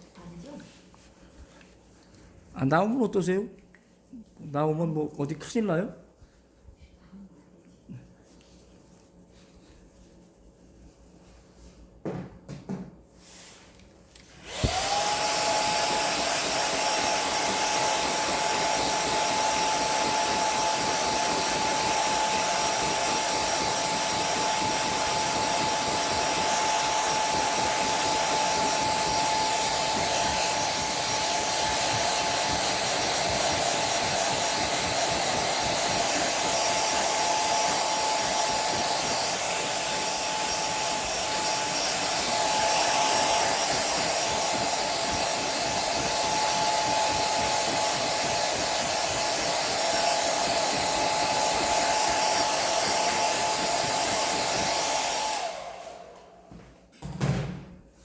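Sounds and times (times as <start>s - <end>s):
hair dryer blowing: 13.3s - 56.7s.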